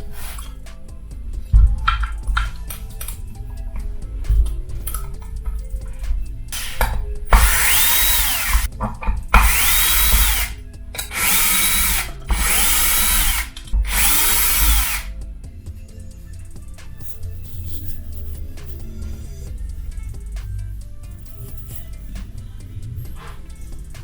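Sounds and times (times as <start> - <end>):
background music: 0.0 - 24.0
power drill running: 6.5 - 8.7, 9.3 - 15.2.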